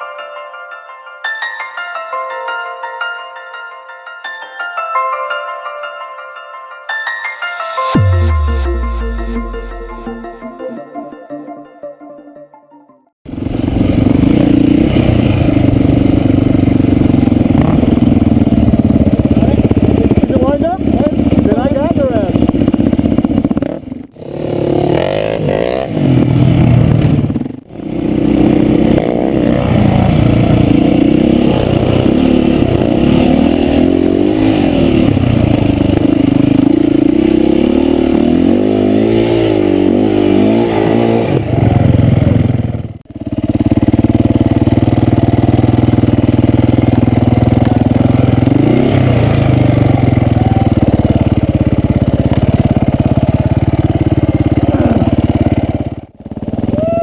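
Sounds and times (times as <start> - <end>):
dirt bike engine running hard: 13.3 - 57.0.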